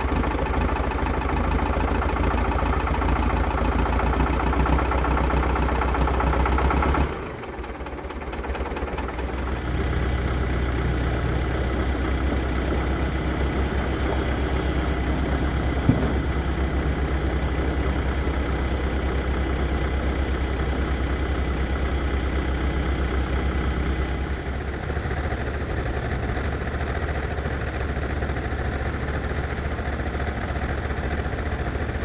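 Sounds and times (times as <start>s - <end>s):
backhoe engine idling: 0.0s - 32.0s.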